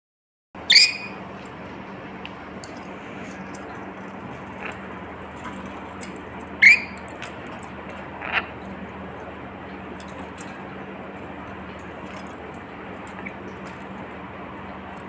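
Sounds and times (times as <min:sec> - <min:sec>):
parrot squawking: 0:00.6 - 0:01.2, 0:06.6 - 0:07.0, 0:08.2 - 0:08.5
steady hiss and low hum: 0:00.6 - 0:15.0.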